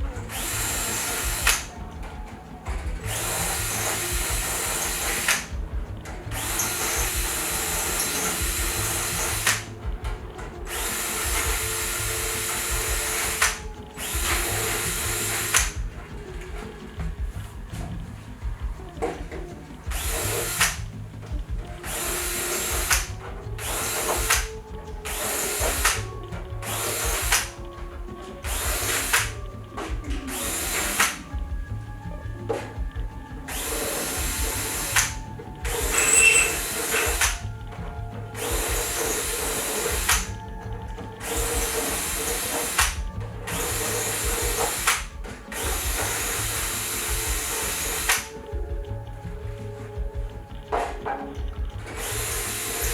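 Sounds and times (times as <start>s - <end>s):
power drill bursts: 0.0s - 9.8s, 10.6s - 16.7s, 19.8s - 20.8s, 21.8s - 27.6s, 28.4s - 31.4s, 33.5s - 37.4s, 38.4s - 48.4s, 50.8s - 52.9s
background music beat: 0.0s - 52.9s.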